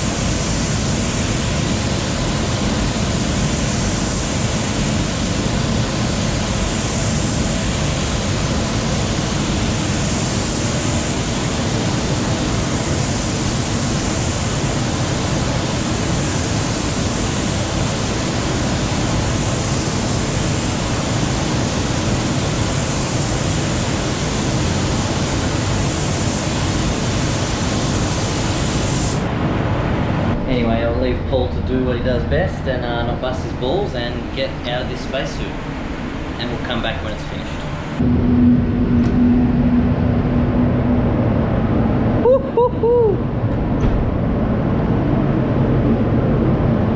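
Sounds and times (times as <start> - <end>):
rush of air from spray booth: 0.0 - 30.5.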